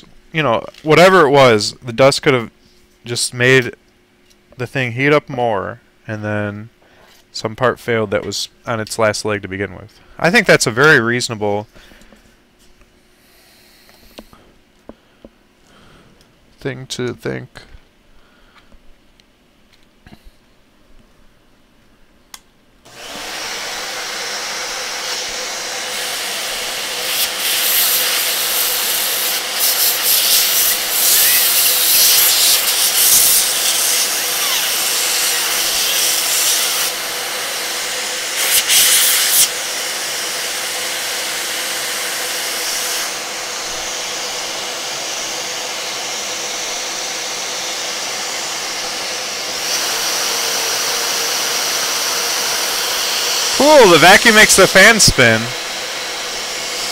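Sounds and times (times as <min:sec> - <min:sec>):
vacuum cleaner suction hiss: 0:22.9 - 0:56.9.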